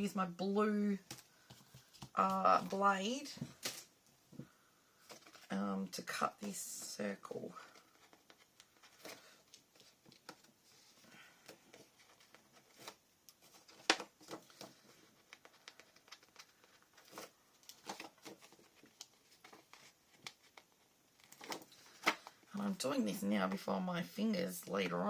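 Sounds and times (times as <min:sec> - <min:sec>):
paper rustling: 0:01.0 - 0:05.5, 0:07.6 - 0:22.4.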